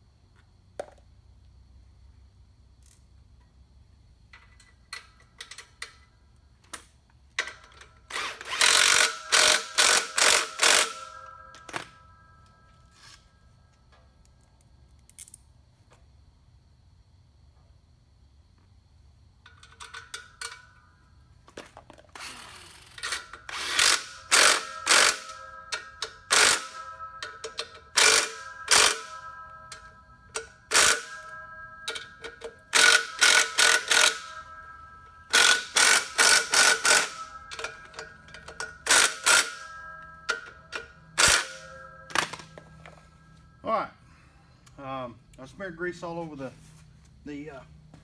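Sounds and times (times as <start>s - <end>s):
metal parts clanking: 7.4s - 12.0s, 19.5s - 20.8s, 21.5s - 43.2s.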